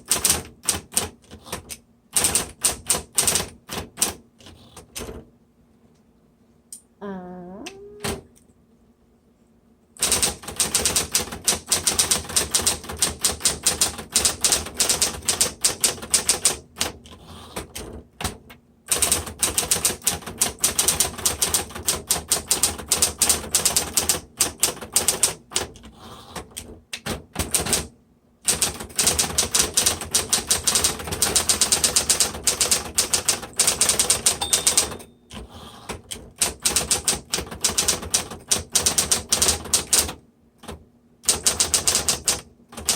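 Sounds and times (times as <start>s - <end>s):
electric typewriter keys striking: 0.0s - 4.2s, 10.0s - 17.0s, 17.6s - 25.8s, 28.5s - 35.4s, 36.0s - 42.9s.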